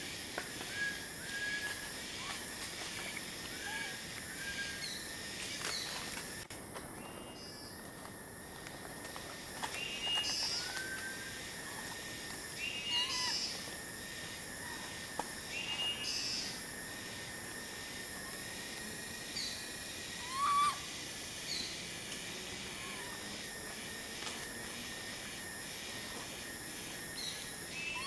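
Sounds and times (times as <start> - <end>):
outdoor background hiss: 0.0 - 28.0
high-pitched animal calls: 20.2 - 20.9.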